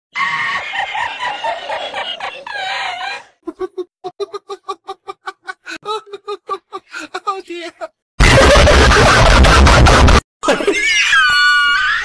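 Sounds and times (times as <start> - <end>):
clucking cartoon cackle: 0.2 - 6.9, 8.2 - 10.9.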